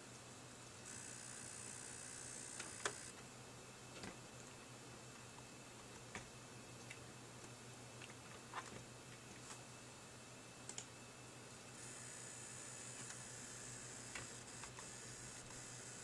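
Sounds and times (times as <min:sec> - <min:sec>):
computer hum: 0:00.0 - 0:16.0
soft clicks: 0:10.7 - 0:10.9.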